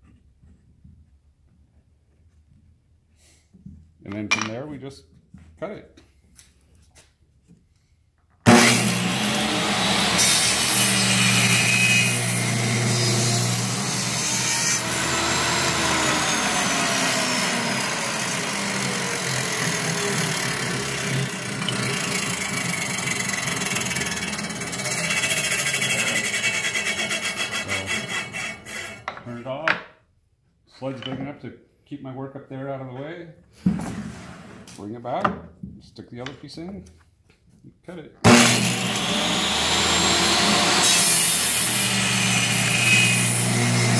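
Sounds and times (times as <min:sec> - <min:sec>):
table saw winding down: 0:08.5 - 0:29.1, 0:38.2 - 0:43.9
table saw running: 0:08.5 - 0:29.2, 0:38.2 - 0:43.9
table saw switch: 0:08.5 - 0:29.2, 0:38.2 - 0:43.9.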